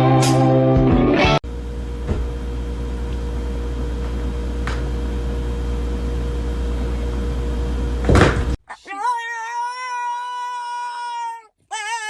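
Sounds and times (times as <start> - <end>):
guitar music: 0.0 - 1.4
low mechanical hum: 1.4 - 8.6.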